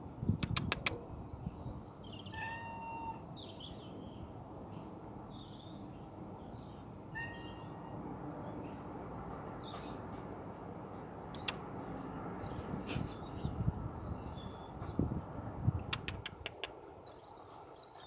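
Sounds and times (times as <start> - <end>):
sharp clicks: 0.4 - 1.0, 11.4 - 11.6, 15.9 - 16.8
cat meowing: 2.3 - 3.2, 7.1 - 7.9.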